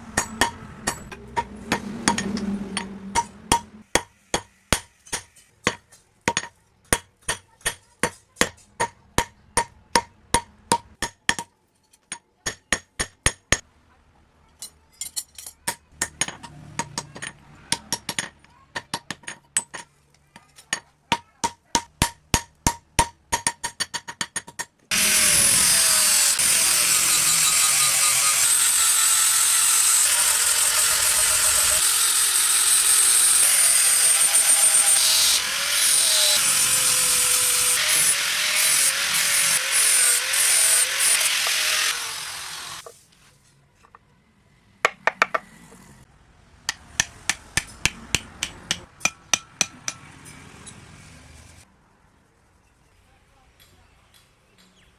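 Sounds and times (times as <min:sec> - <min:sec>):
hammer striking metal on anvil: 0:00.0 - 0:11.5, 0:46.7 - 0:50.8
power grinder whining: 0:24.9 - 0:42.8.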